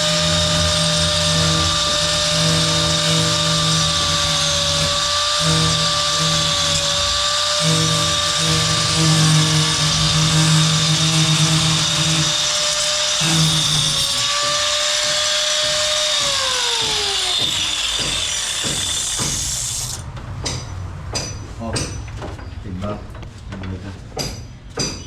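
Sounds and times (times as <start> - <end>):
electric power tool running: 0.0 - 20.0.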